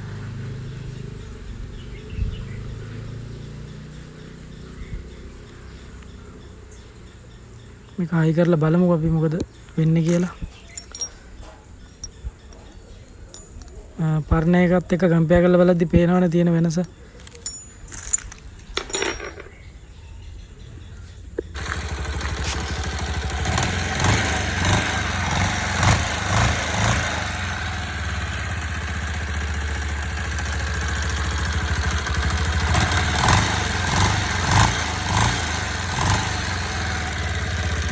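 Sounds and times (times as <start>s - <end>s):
motorcycle engine running: 0.0s - 7.9s, 21.5s - 37.9s.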